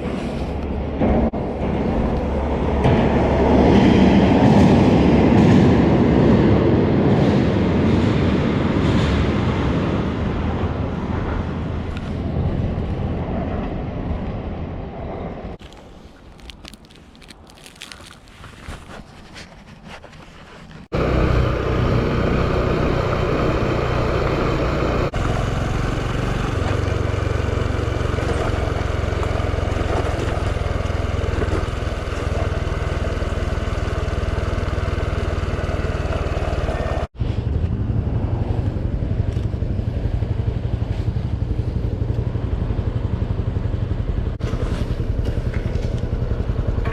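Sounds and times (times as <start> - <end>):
wind noise on microphone: 0.0 - 17.4
small motorcycle engine running: 20.9 - 46.9.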